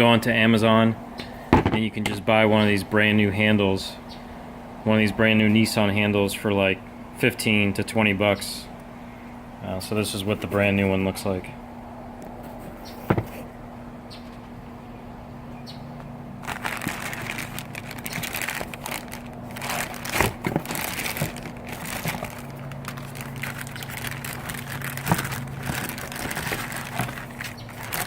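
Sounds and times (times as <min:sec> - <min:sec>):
packaging crinkling: 0:16.4 - 0:28.0.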